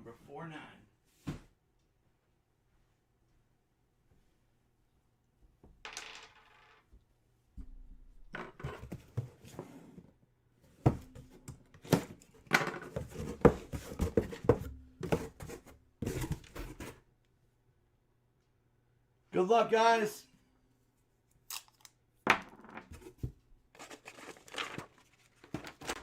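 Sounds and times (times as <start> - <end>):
cardboard and card packs rustling: 10.9 - 17.0, 23.0 - 26.0.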